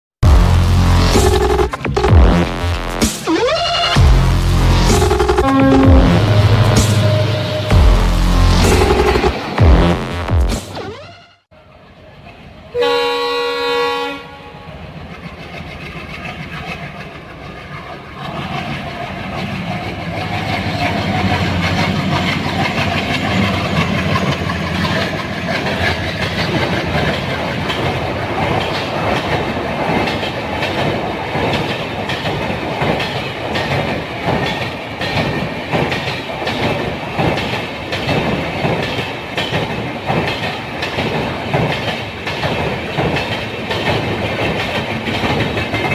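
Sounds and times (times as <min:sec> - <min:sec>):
locomotive horn blast: 0:00.2 - 0:10.3, 0:12.8 - 0:14.7
diesel locomotive engine chugging: 0:00.2 - 0:10.8, 0:14.7 - 0:45.9
train wheels clacking over rail joints: 0:15.0 - 0:45.9.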